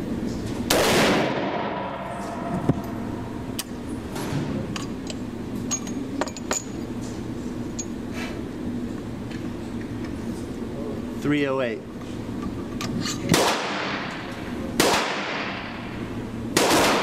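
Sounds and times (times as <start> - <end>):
shotgun firing: 0.7 - 2.0, 13.3 - 14.1, 14.8 - 15.6, 16.6 - 17.0.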